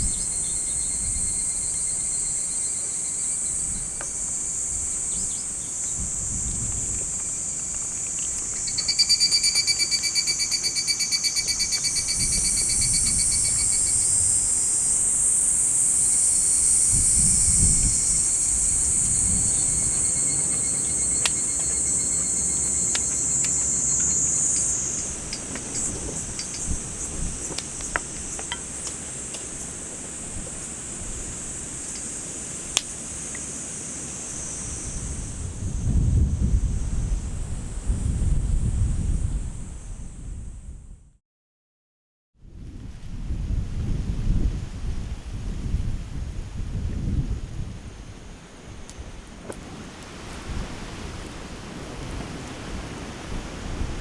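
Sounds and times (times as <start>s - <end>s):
wind rumbling on microphone: 0.0s - 2.6s, 3.4s - 41.2s, 42.4s - 54.0s
rapidly pulsing insect trill: 0.0s - 37.3s
insects chorus: 0.0s - 40.2s.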